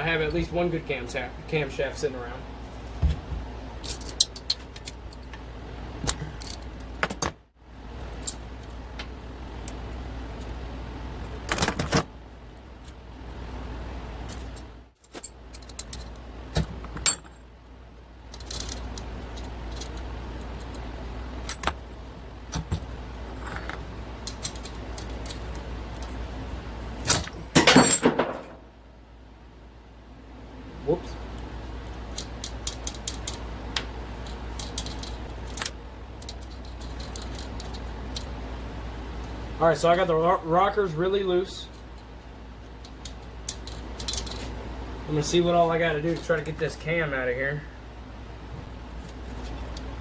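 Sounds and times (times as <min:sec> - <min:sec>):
low steady hum: 0:00.0 - 0:50.0
metal tools clinking on engine: 0:03.8 - 0:05.3, 0:14.3 - 0:17.5, 0:18.3 - 0:21.8, 0:22.5 - 0:26.2, 0:27.0 - 0:28.6, 0:34.2 - 0:38.3, 0:42.7 - 0:44.6.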